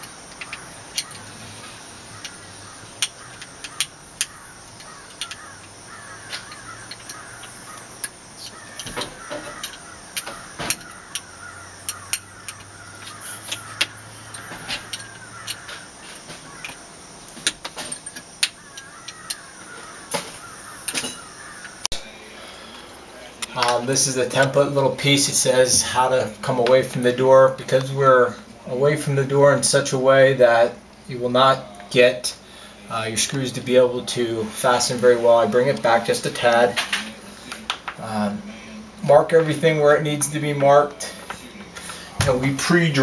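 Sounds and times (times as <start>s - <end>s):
harsh bird calls: 0.0s - 23.4s.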